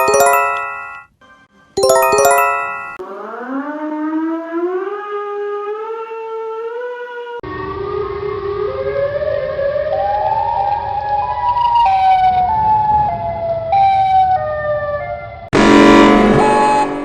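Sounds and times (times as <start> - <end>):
rising siren wail: 3.0 - 10.0.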